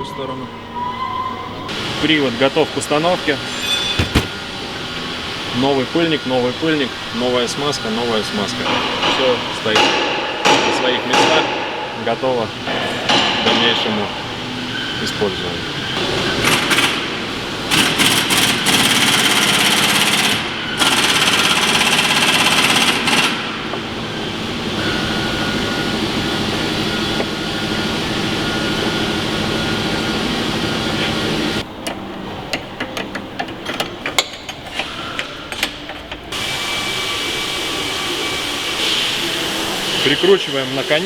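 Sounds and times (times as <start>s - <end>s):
power wrench running: 3.4s - 4.6s, 16.0s - 24.4s.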